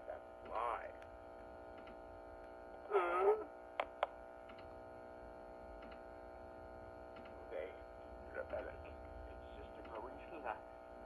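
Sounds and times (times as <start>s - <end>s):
steady electrical hum: 0.0s - 11.0s.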